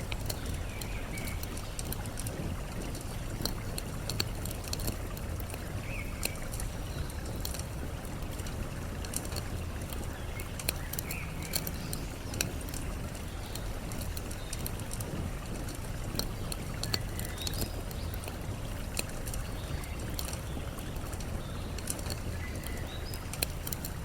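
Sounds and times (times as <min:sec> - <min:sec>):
campfire crackling and popping: 0:00.0 - 0:24.0
running water: 0:00.0 - 0:24.0.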